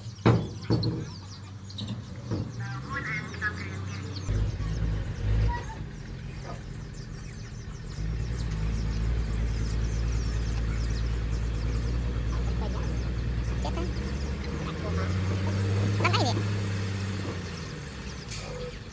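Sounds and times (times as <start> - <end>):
heavy diesel machinery humming: 0.0 - 18.9.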